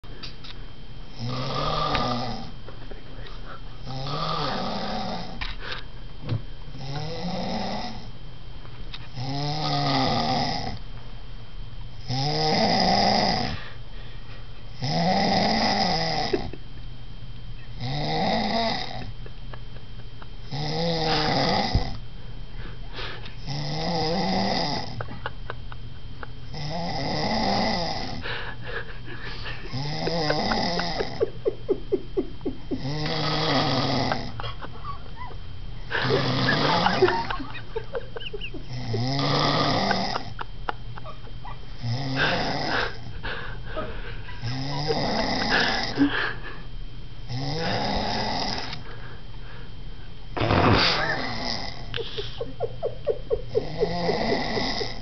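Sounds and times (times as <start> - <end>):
person snoring: 1.1 - 2.6, 3.2 - 5.8, 6.8 - 8.1, 9.1 - 10.8, 12.0 - 13.8, 14.7 - 16.5, 17.7 - 19.1, 20.4 - 22.0, 22.6 - 25.3, 26.4 - 34.6, 35.8 - 38.0, 38.6 - 40.4, 41.8 - 46.6, 47.3 - 48.9, 50.4 - 52.6, 53.4 - 55.0.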